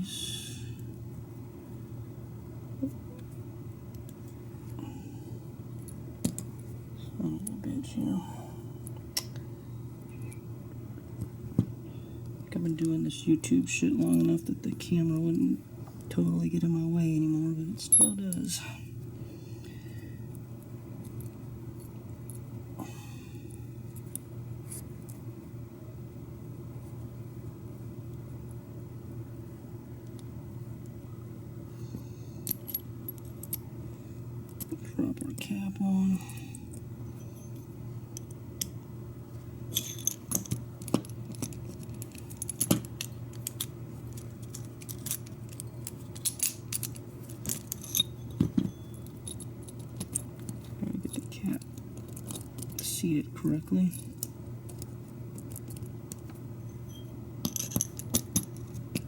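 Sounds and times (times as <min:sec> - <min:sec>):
steady low hum: 0:00.0 - 0:59.0
small metal parts clicking: 0:39.7 - 0:53.0, 0:53.8 - 0:59.0.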